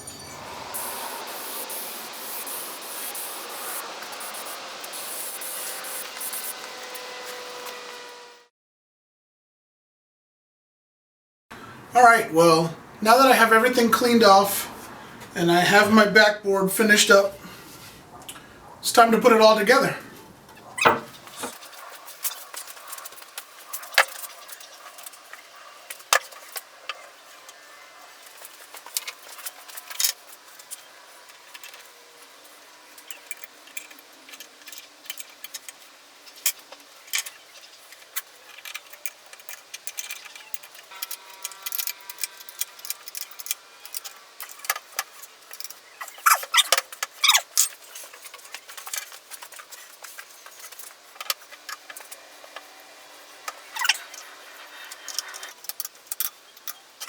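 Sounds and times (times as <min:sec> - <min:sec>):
metal parts clinking and clattering: 0:38.5 - 0:52.2.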